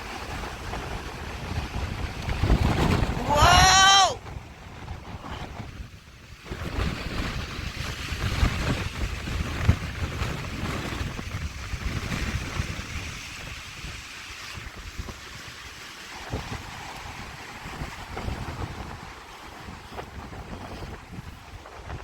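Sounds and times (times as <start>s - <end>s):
gusty wind rushing: 0.0s - 15.4s, 16.1s - 22.0s
wind buffeting microphone: 0.0s - 22.0s.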